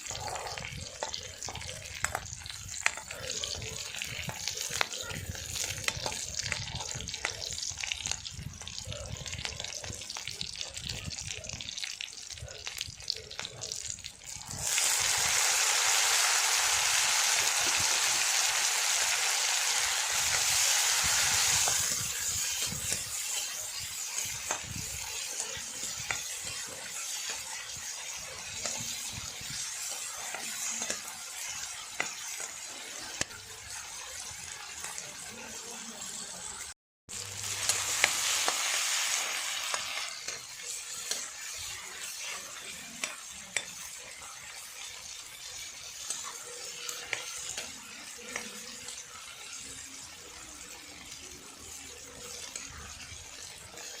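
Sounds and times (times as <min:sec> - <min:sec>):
food sizzling in oil: 0:00.0 - 0:54.0.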